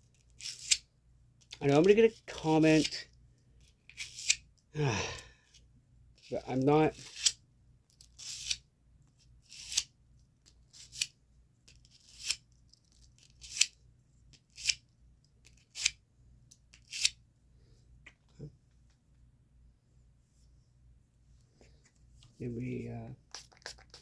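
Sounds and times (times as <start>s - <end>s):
knife scraping on sharpener: 0.4s - 0.8s, 3.9s - 4.4s, 8.1s - 8.6s, 9.5s - 9.9s, 10.7s - 11.1s, 11.9s - 12.4s, 13.2s - 13.8s, 14.5s - 14.8s, 16.7s - 17.2s.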